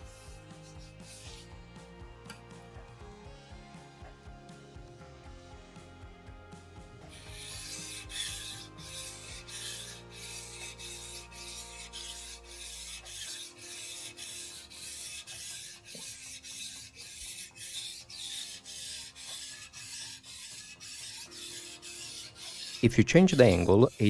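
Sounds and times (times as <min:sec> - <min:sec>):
knife scraping on whetstone: 0:07.1 - 0:24.0.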